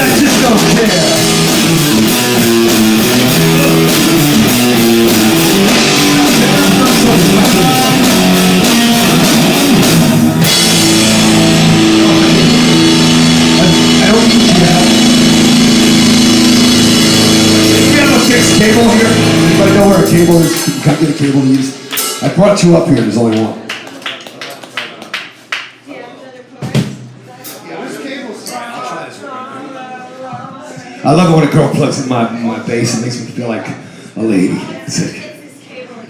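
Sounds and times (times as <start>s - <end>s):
electric guitar: 0.0s - 22.3s
drum kit: 0.0s - 23.6s.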